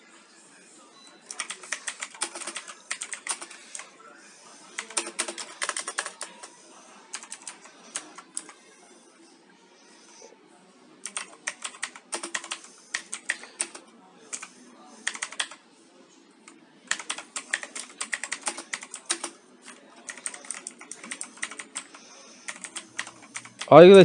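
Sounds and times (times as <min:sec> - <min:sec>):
clicky mechanical keyboard typing: 0:01.3 - 0:03.8, 0:04.8 - 0:06.4, 0:07.1 - 0:08.5, 0:11.0 - 0:15.6, 0:16.9 - 0:23.7.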